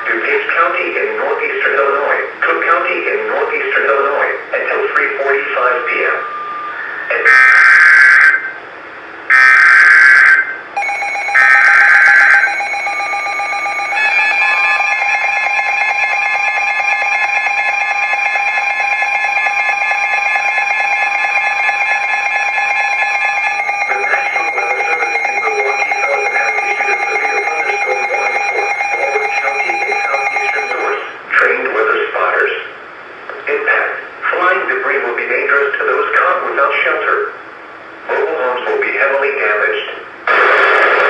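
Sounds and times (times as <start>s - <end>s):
warbling data tone bursts: 10.8s - 31.1s
steady attention tone: 10.8s - 31.2s.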